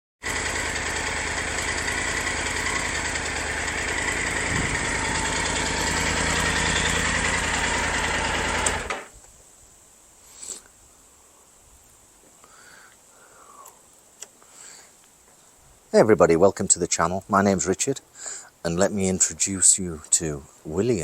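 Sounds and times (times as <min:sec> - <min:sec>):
motorcycle engine idling: 0:00.2 - 0:09.0.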